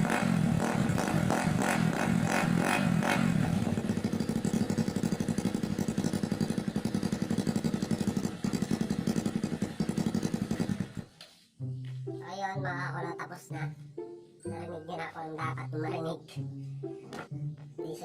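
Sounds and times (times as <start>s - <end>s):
motorcycle engine revving and idling: 0.0s - 11.2s.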